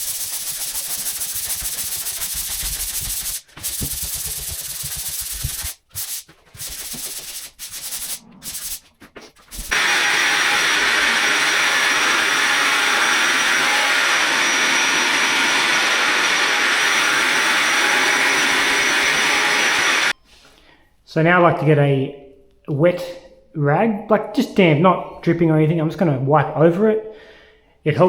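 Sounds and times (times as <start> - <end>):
power sander hissing: 0.0 - 8.8, 9.5 - 20.1
sandpaper rubbing on plaster: 0.0 - 9.8.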